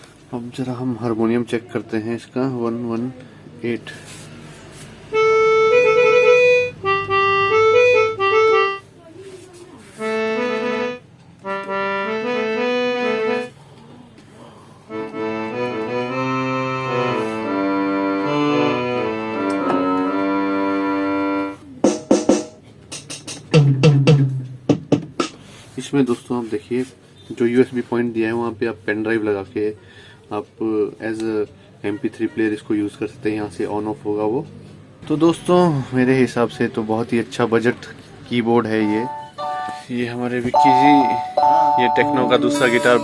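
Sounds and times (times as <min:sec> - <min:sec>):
electronic keyboard harmonium notes: 0:05.1 - 0:09.0, 0:09.9 - 0:13.6, 0:14.8 - 0:21.7, 0:38.6 - 0:43.0.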